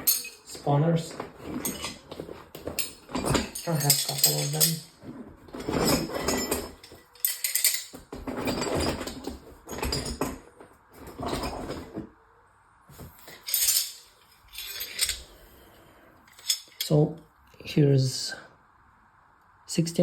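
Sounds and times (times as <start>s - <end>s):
metal wrenches clinking: 0.0s - 10.4s, 13.3s - 15.3s, 16.3s - 17.0s.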